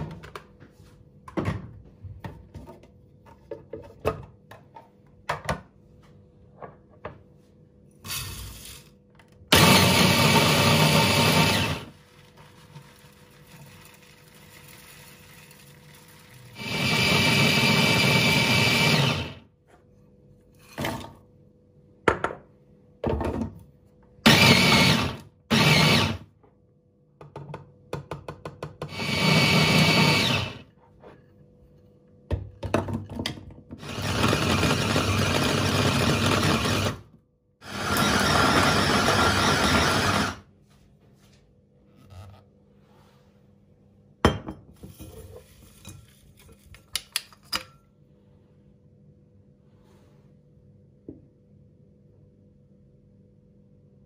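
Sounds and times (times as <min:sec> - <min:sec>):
blender motor running: 0:09.5 - 0:12.0, 0:16.2 - 0:19.4, 0:24.2 - 0:26.3, 0:28.9 - 0:30.6, 0:33.8 - 0:37.0, 0:37.6 - 0:40.4.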